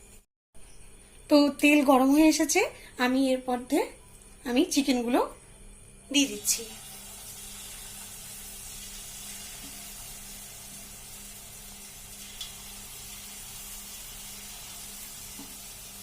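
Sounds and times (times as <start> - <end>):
chicken frying in oil: 6.2 - 16.0.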